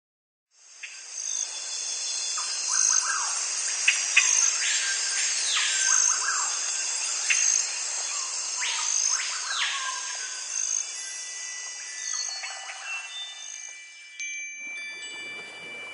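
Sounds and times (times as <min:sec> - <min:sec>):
insects chirring: 0:00.6 - 0:15.9
birds chirping: 0:04.2 - 0:13.7
rising and falling bird calls: 0:08.1 - 0:10.8.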